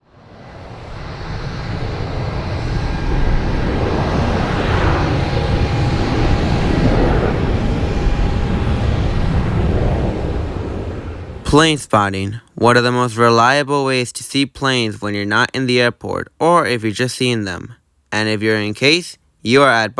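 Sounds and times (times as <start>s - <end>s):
jet airliner roar overhead: 0.0s - 11.6s.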